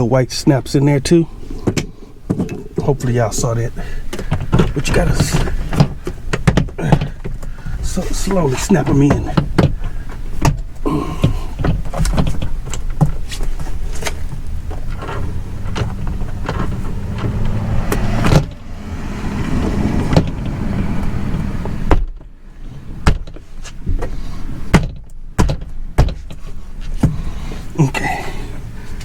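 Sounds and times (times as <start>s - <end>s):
steady low rumble: 13.5s - 23.0s.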